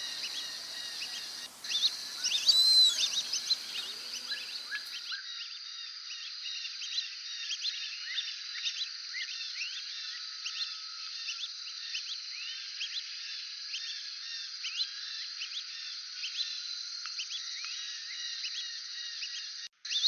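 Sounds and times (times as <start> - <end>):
ducks whistling chirps: 0.0 - 5.1.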